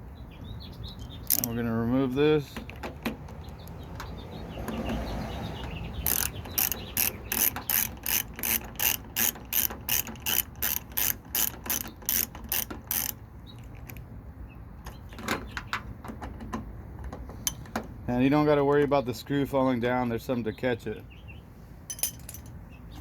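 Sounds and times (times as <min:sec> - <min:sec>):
ratchet tool clicking: 0:01.3 - 0:01.6, 0:06.0 - 0:14.0.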